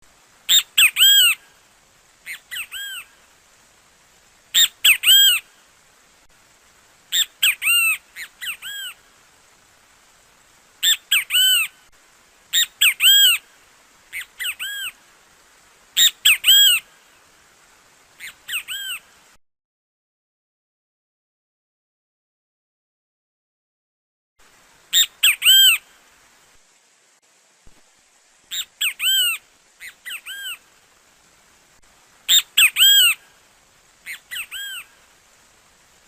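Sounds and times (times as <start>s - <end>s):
bird calling loud arching notes: 0.5s - 1.5s, 2.3s - 3.1s, 7.1s - 9.0s, 14.1s - 15.0s, 18.2s - 19.0s, 25.0s - 25.9s, 28.5s - 30.7s, 32.3s - 33.4s, 34.0s - 35.0s.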